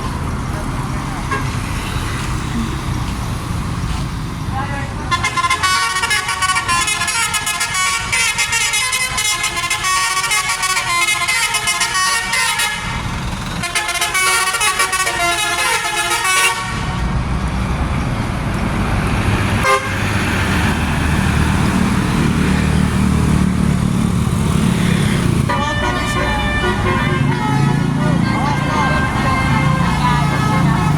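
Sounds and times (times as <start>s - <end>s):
bus engine humming: 0.0s - 30.9s
multi-tone air horn melody: 5.1s - 13.0s, 13.6s - 17.0s, 19.6s - 20.0s, 25.5s - 30.9s.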